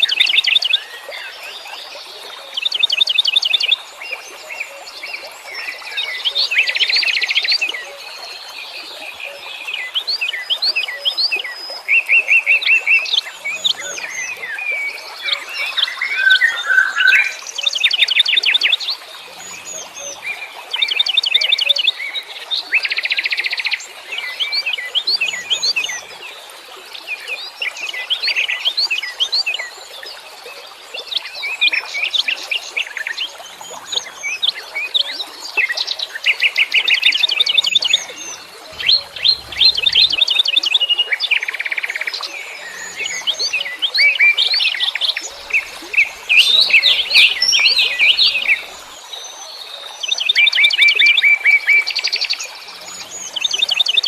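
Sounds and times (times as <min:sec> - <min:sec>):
songbirds chirping and singing: 0:36.4 - 0:41.1, 0:41.8 - 0:49.0.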